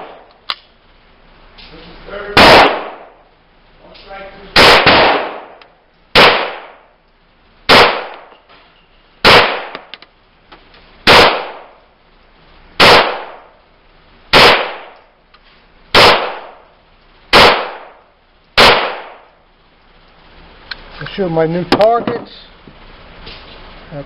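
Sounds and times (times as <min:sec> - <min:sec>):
pistol shots with echo: 0:02.3 - 0:03.2, 0:04.6 - 0:05.6, 0:06.2 - 0:06.9, 0:07.7 - 0:08.4, 0:09.2 - 0:09.9, 0:11.1 - 0:11.8, 0:12.8 - 0:13.6, 0:14.3 - 0:15.0, 0:15.9 - 0:16.6, 0:17.3 - 0:18.0, 0:18.6 - 0:19.3.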